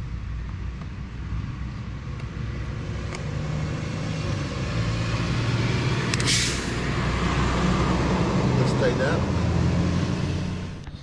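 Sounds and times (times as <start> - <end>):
low rumble of road traffic: 0.0 - 11.0
short sharp hiss: 6.2 - 6.8.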